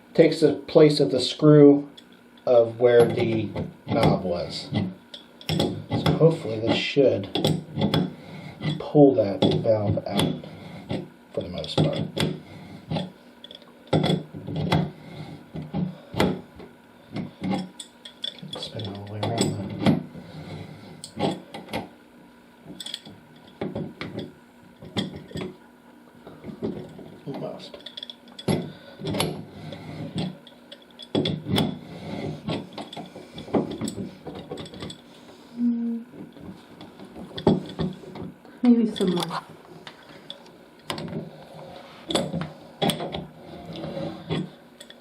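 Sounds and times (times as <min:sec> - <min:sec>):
metal tools knocking and scraping: 0:17.2 - 0:20.0, 0:22.7 - 0:25.6, 0:26.3 - 0:35.0.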